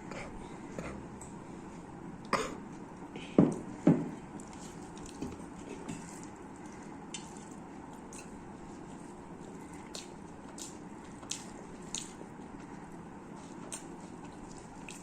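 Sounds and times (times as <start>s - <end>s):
person coughing: 2.3s - 2.6s
soft eating clicks: 3.5s - 8.5s, 9.3s - 15.0s.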